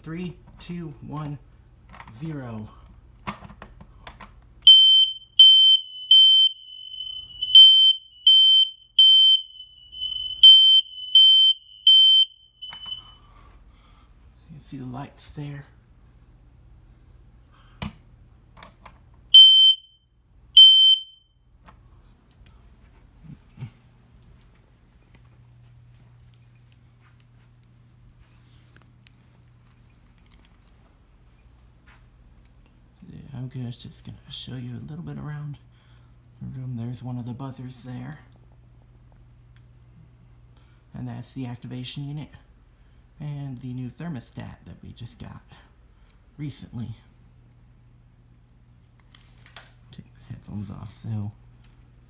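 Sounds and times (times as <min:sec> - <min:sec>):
steady low hum: 0:00.0 - 0:52.0
smoke alarm beeping: 0:04.6 - 0:13.4, 0:19.3 - 0:21.5.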